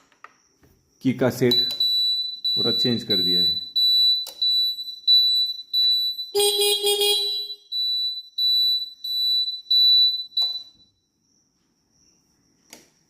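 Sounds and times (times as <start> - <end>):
high-pitched electronic beep: 1.5 - 10.7
motorcycle horn blast: 6.4 - 7.6.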